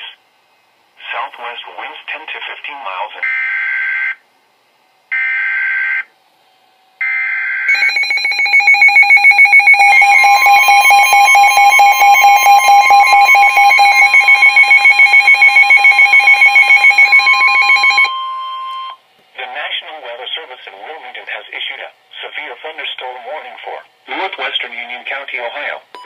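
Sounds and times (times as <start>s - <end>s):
pulsing electronic alarm: 5.1s - 6.1s, 7.0s - 19.0s
screechy digital header tones: 7.7s - 19.0s
steady alert tone: 7.7s - 19.0s.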